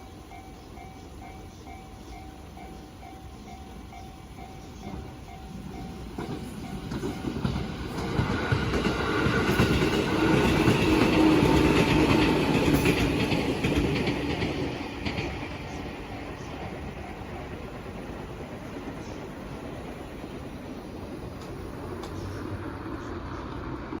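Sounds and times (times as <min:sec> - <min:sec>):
level crossing warning bell: 0:00.0 - 0:08.2, 0:14.8 - 0:18.4
train wheels clattering over rails: 0:00.0 - 0:24.0.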